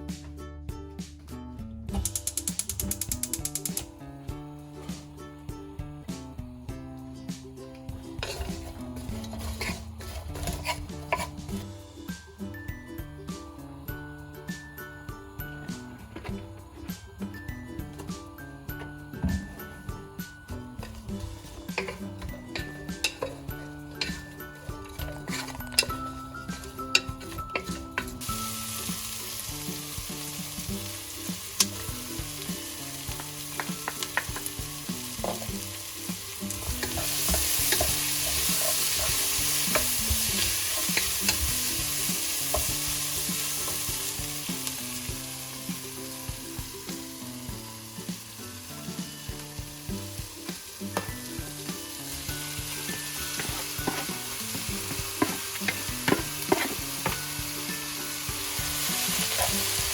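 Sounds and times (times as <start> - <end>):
utensil clicking against pan: 2.0 - 3.9, 21.7 - 24.2, 24.8 - 28.2, 36.5 - 41.7, 53.4 - 57.3
stir fry sizzling in pan: 7.9 - 12.2, 17.9 - 59.9.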